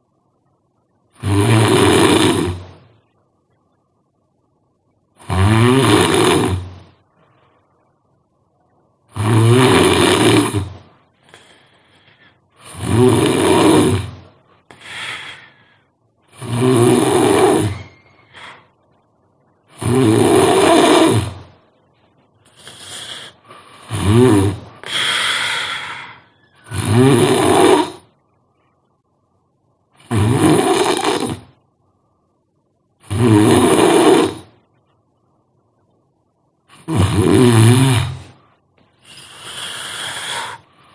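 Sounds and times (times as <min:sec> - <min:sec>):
person snoring loudly: 0:01.1 - 0:02.8, 0:05.2 - 0:06.8, 0:09.1 - 0:10.8, 0:12.6 - 0:15.5, 0:16.3 - 0:18.6, 0:19.7 - 0:21.5, 0:22.5 - 0:28.1, 0:30.0 - 0:31.5, 0:33.0 - 0:34.6, 0:36.7 - 0:38.4, 0:39.0 - 0:40.7
soft snorts: 0:05.2 - 0:06.9, 0:09.1 - 0:11.6, 0:30.0 - 0:31.5, 0:36.7 - 0:40.9.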